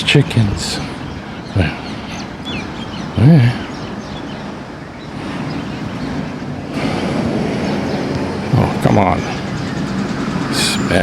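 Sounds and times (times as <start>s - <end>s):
faint bird chirps: 0.0s - 6.6s
traffic passing: 0.0s - 11.0s.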